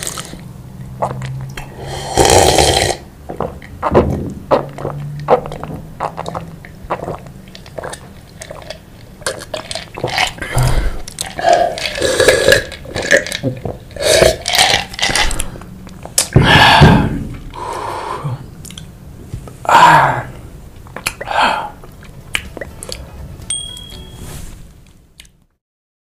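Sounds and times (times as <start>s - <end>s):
chewing and mouth noises: 0.0s - 1.7s, 3.3s - 16.4s, 18.6s - 18.9s, 20.7s - 23.1s
loud burp: 1.8s - 3.1s.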